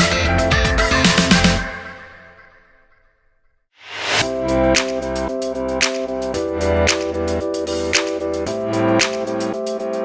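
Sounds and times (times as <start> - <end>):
music with a steady beat: 0.0 - 2.0, 4.2 - 10.0
background music: 0.0 - 2.8, 3.9 - 10.0.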